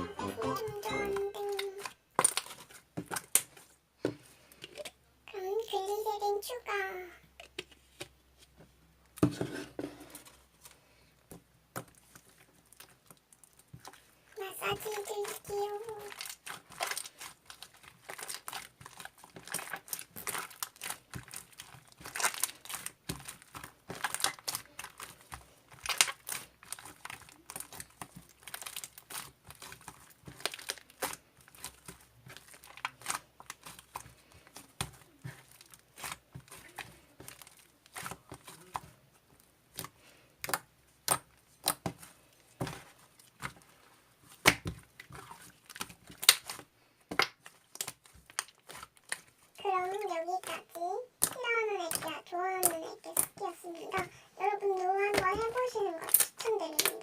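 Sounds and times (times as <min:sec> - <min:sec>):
slime being squeezed: 0:16.0 - 0:34.0.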